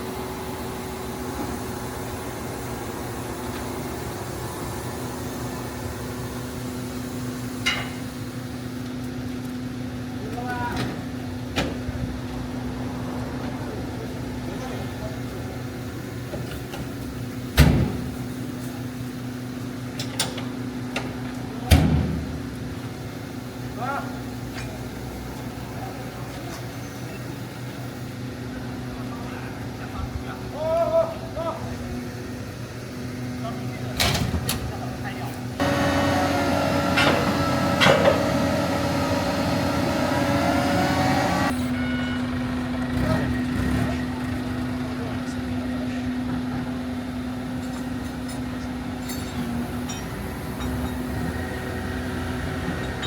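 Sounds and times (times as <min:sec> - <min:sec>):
steady machine hum: 0:00.0 - 0:08.9, 0:34.8 - 0:43.0.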